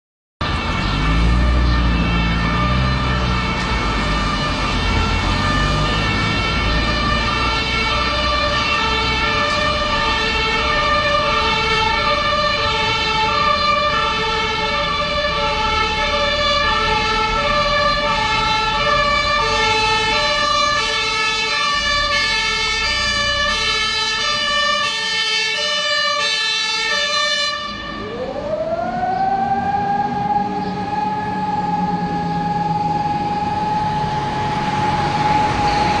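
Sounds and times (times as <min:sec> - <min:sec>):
motor-driven alarm siren wailing: 0:00.5 - 0:36.0
fire engine two-tone horn: 0:00.6 - 0:28.1.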